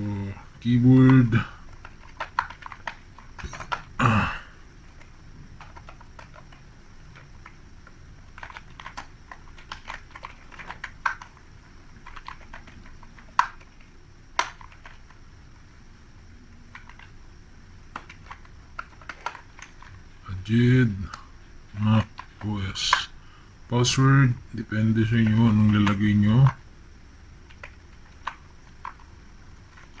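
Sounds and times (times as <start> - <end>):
typing on a computer keyboard: 1.0 - 3.9, 4.9 - 7.6, 8.3 - 11.4, 12.0 - 15.2, 16.7 - 17.2, 17.9 - 20.0, 25.0 - 26.6, 27.5 - 29.1.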